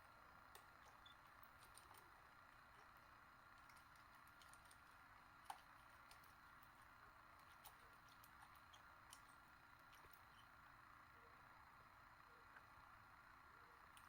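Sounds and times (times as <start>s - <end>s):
faint steady hiss: 0.0s - 14.0s.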